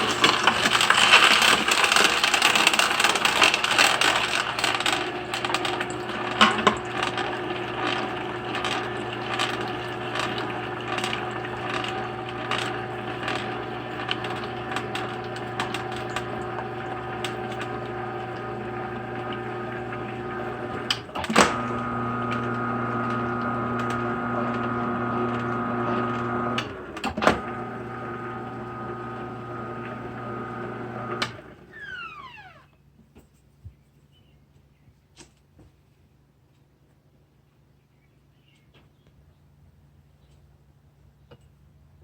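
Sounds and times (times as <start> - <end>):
electric juicer running: 0.0 - 32.6.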